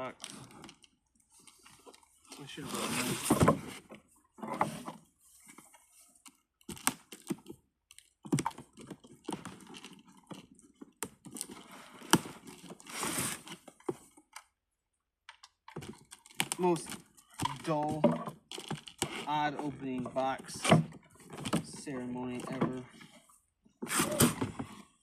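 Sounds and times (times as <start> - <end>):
cardboard tearing and rustling: 11.1 - 13.7, 23.9 - 24.5.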